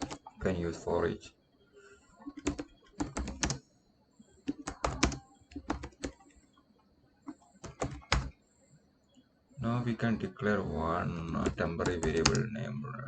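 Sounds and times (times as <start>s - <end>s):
computer keyboard typing: 0.0s - 0.4s, 2.2s - 3.6s, 4.4s - 6.6s, 7.2s - 8.4s, 11.1s - 12.5s.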